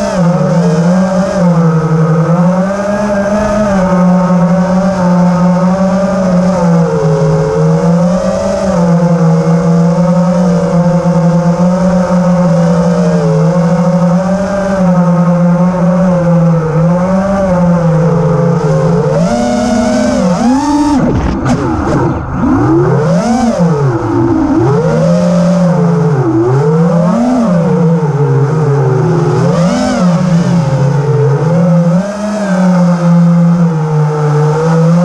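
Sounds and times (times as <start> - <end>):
drone motors and propellers whining: 0.0 - 35.0.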